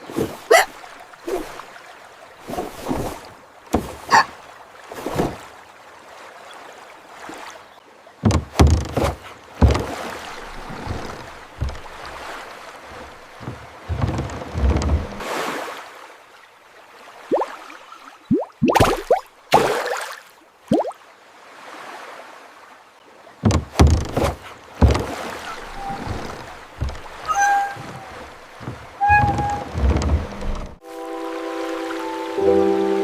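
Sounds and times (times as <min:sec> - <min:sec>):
faint water wash: 0:00.0 - 0:33.0
water splashing around boat: 0:00.0 - 0:33.0
low thumps: 0:08.2 - 0:12.3, 0:12.9 - 0:15.2, 0:23.4 - 0:30.8.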